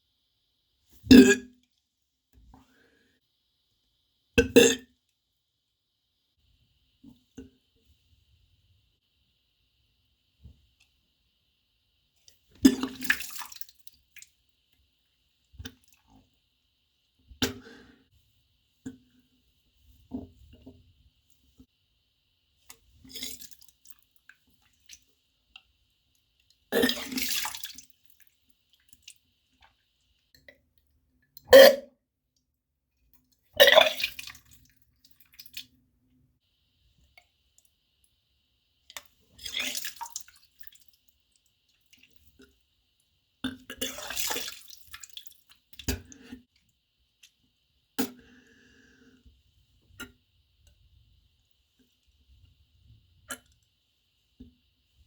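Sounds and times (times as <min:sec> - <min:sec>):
person burping: 0:01.1 - 0:01.6, 0:04.4 - 0:04.9, 0:31.5 - 0:31.9.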